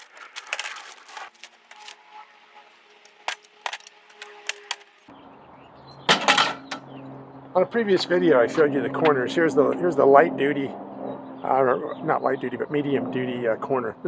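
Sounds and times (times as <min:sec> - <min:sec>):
metal parts clattering: 0:00.0 - 0:02.0, 0:03.2 - 0:04.8, 0:06.1 - 0:06.8
small metal parts clinking: 0:00.0 - 0:02.0, 0:06.1 - 0:06.8.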